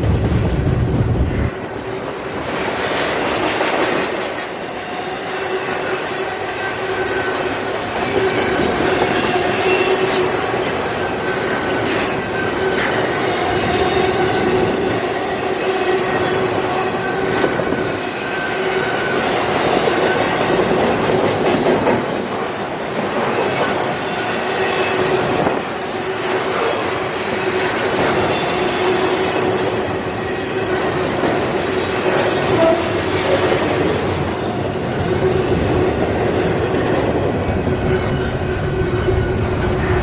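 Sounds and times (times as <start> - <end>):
steel wheels on rail: 0.0 - 40.0
rail-joint clatter: 1.6 - 40.0.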